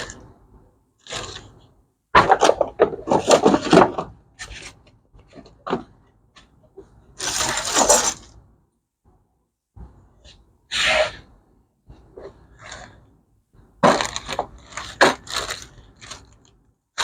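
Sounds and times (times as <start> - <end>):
packaging rustling and scraping: 1.0 - 1.6, 7.2 - 8.3, 13.8 - 17.0.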